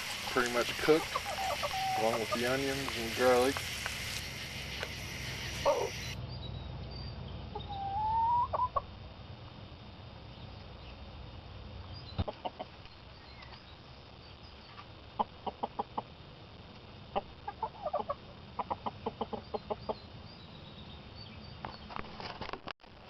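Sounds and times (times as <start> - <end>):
chickens clucking: 0.0 - 6.2, 7.5 - 8.9, 12.2 - 12.9, 15.2 - 16.1, 17.1 - 20.0
low background noise: 0.0 - 23.0.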